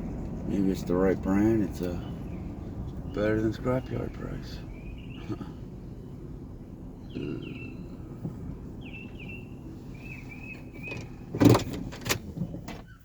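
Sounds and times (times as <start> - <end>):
vehicle engine running: 0.0 - 13.0
bird chirping: 1.6 - 6.2, 7.0 - 8.1, 8.8 - 11.1.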